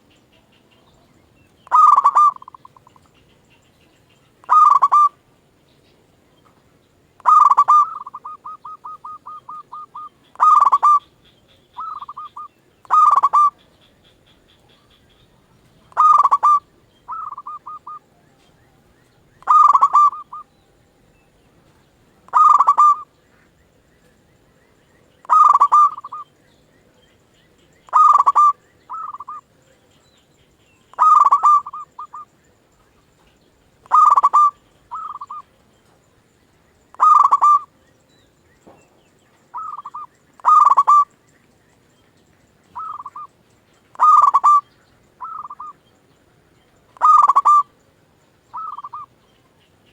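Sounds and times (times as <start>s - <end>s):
dove cooing: 0.0s - 3.2s, 4.4s - 5.2s, 7.2s - 11.2s, 11.8s - 23.2s, 25.2s - 26.4s, 27.9s - 29.6s, 30.9s - 32.3s, 33.2s - 35.6s, 36.9s - 37.8s, 39.5s - 41.1s, 42.7s - 45.8s, 46.9s - 47.8s, 48.5s - 49.3s.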